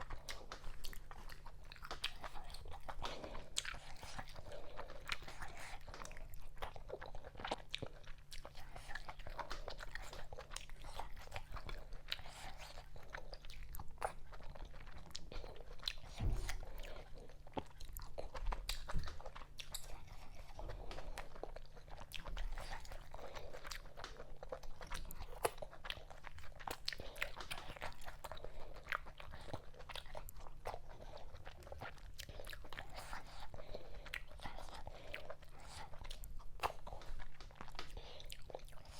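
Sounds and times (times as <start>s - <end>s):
faint low hum: 0.0s - 38.9s
wet chewing and lip smacks: 0.0s - 38.9s
dull low thuds: 16.1s - 16.8s.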